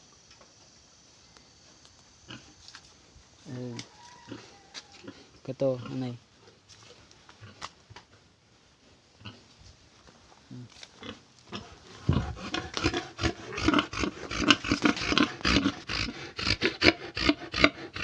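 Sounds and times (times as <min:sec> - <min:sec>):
pigs grunting: 0:11.0 - 0:18.0.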